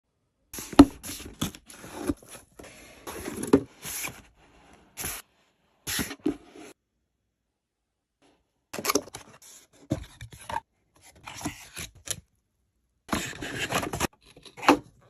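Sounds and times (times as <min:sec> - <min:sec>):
crinkling scraping handling noises: 0:00.6 - 0:05.2, 0:13.1 - 0:15.0.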